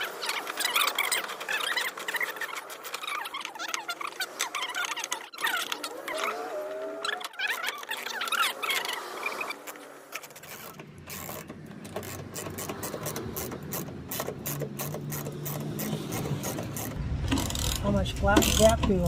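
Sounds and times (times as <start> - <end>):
ratchet wrench clicking: 10.3 - 17.8
steady low hum: 16.1 - 19.0.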